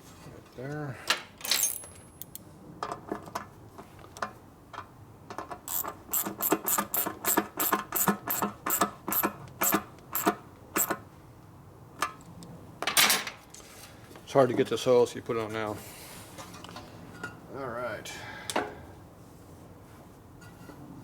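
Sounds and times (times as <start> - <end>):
ratchet wrench clicking: 5.7 - 11.0.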